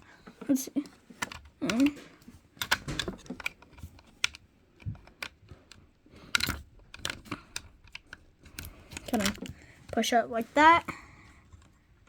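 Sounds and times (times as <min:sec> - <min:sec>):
plastic bricks clicking: 0:01.1 - 0:10.0.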